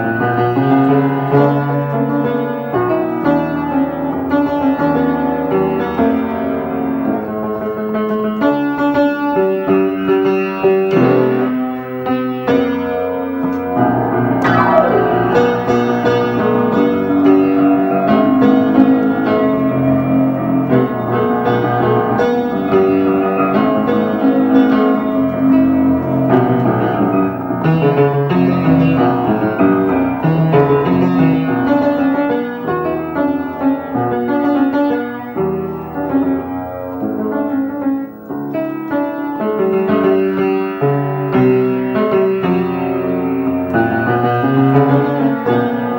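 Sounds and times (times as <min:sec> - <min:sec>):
piano melody over chords: 0:14.4 - 0:15.9.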